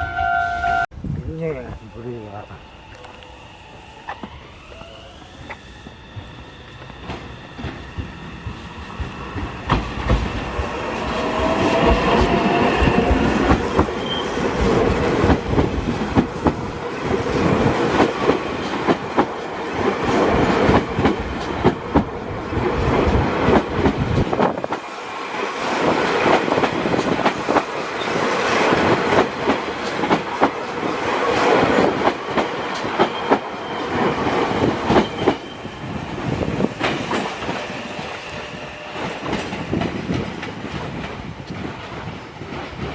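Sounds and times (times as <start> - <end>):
train wheels clicking over rail joints: 4.1 - 25.0, 25.6 - 42.9.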